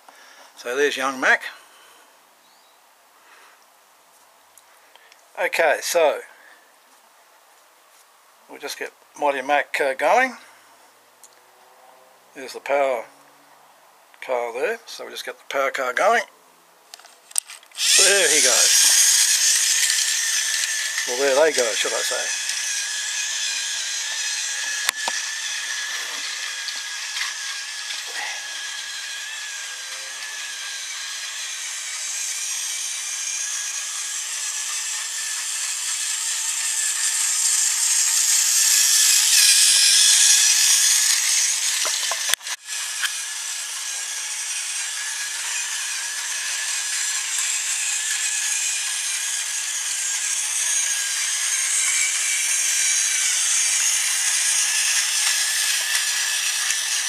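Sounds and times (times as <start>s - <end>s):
toy train motor whirring: 16.9s - 57.0s.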